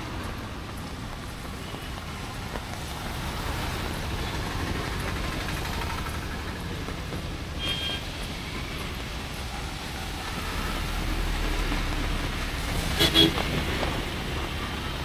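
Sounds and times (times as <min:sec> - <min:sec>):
rain: 0:00.0 - 0:15.0
vehicle passing on wet road: 0:00.0 - 0:15.0
vehicle horn beep: 0:07.6 - 0:08.2, 0:13.0 - 0:13.4.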